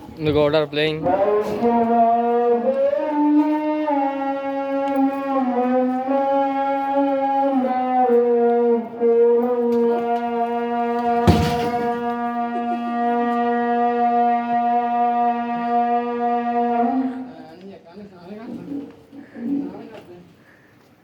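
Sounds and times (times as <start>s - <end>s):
slow melody of long notes: 1.0s - 17.4s.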